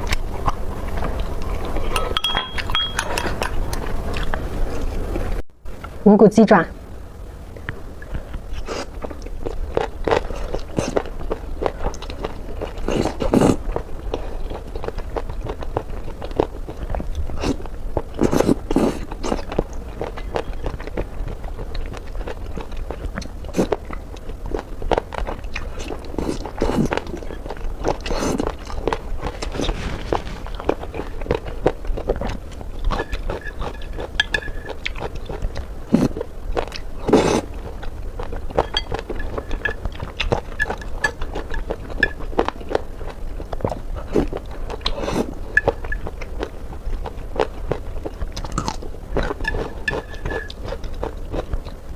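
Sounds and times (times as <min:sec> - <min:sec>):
steady low hum: 0:00.0 - 0:06.0.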